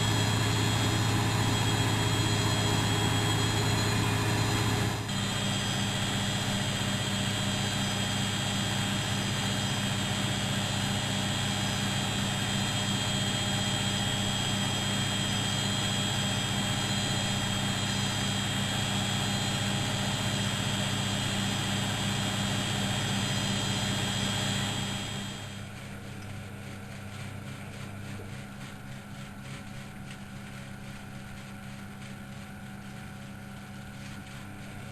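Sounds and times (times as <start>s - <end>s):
washing machine spinning: 0.0s - 34.9s.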